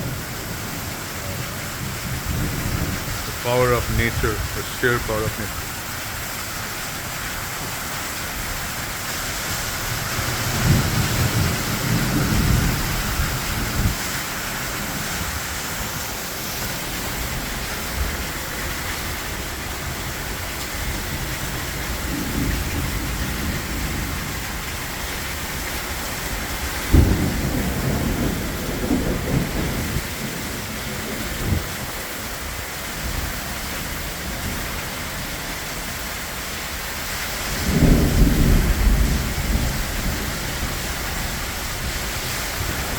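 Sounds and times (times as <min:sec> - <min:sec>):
heavy rain pouring: 0:00.0 - 0:42.9
thunder rumbling: 0:09.9 - 0:18.6, 0:26.5 - 0:31.8, 0:37.5 - 0:42.9.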